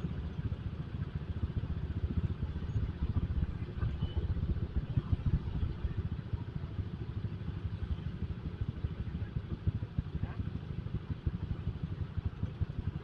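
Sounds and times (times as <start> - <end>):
motorcycle engine running: 0.0 - 13.0
wind buffeting microphone: 2.1 - 6.1.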